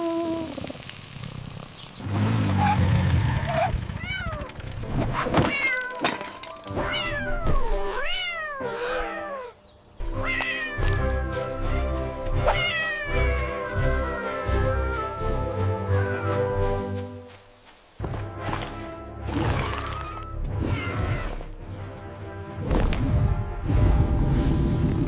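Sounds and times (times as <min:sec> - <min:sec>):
cat meowing: 0:06.8 - 0:09.6, 0:10.2 - 0:11.1, 0:12.4 - 0:15.2.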